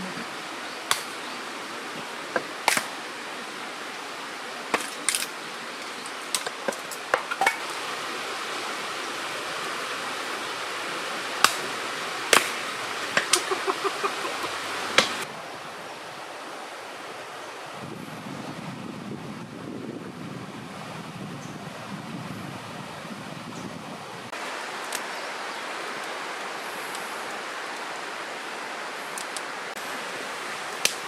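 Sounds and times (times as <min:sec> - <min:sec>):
campfire crackling and popping: 0:30.8 - 0:31.0.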